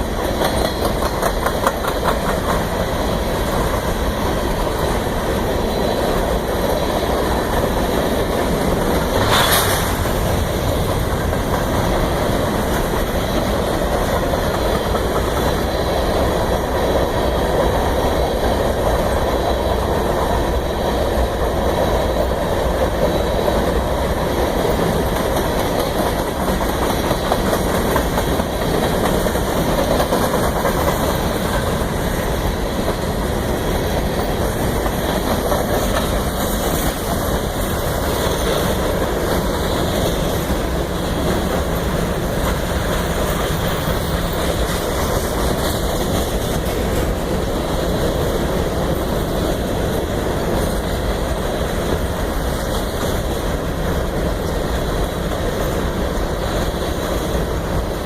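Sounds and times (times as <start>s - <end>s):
freight train rumbling: 0.0s - 58.0s
sharp metal clank: 9.2s - 10.2s.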